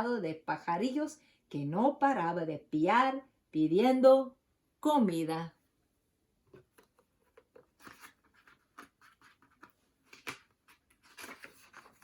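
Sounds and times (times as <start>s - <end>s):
book pages rustling: 6.5s - 12.0s.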